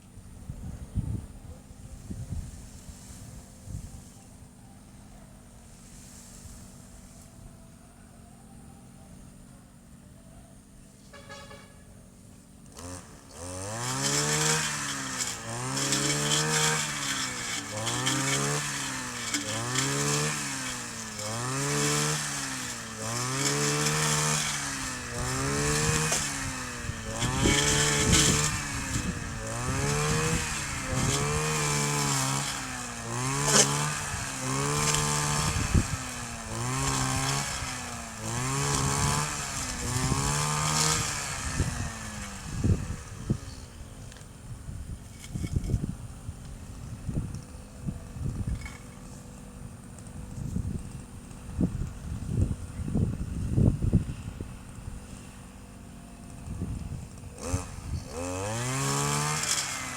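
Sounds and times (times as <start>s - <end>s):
brush cutter engine revving: 12.1s - 59.9s.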